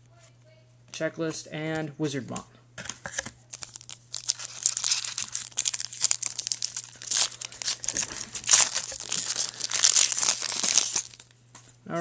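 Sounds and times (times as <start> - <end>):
wrapper crinkling and tearing: 3.1 - 11.3.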